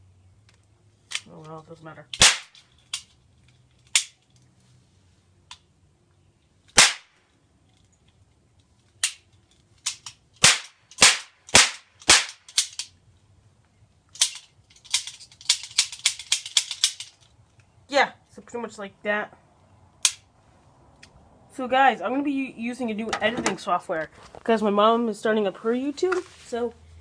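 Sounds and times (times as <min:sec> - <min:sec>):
toy cap gun cracks: 0:02.1 - 0:03.1, 0:03.8 - 0:04.2, 0:06.7 - 0:07.1, 0:09.0 - 0:13.0, 0:14.1 - 0:17.2, 0:20.0 - 0:20.3.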